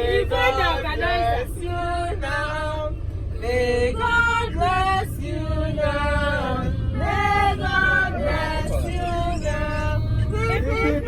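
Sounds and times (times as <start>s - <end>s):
man and woman singing: 0.0s - 11.0s.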